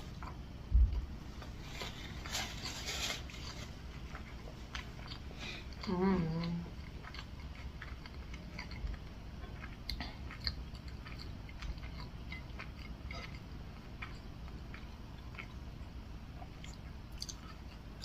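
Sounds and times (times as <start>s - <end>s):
person chewing food: 0.0s - 0.5s, 1.4s - 18.0s
wet mouth clicks and smacks: 16.6s - 17.6s.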